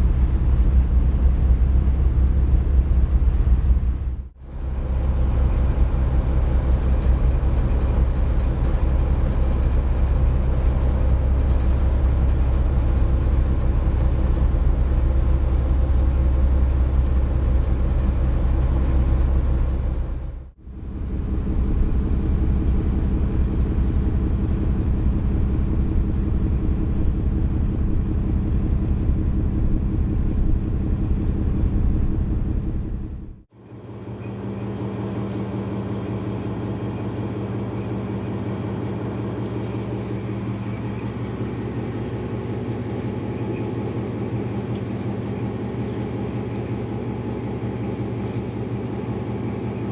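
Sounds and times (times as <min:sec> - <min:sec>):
ship engine low drone: 0:00.0 - 0:49.9.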